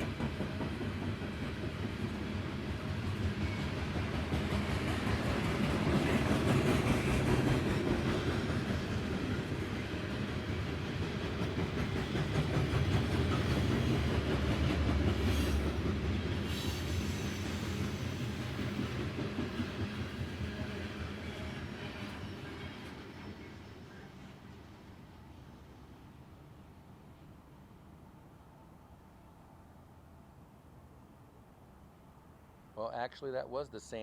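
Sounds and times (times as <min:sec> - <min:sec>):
freight train rumbling on rails: 0:00.0 - 0:29.0.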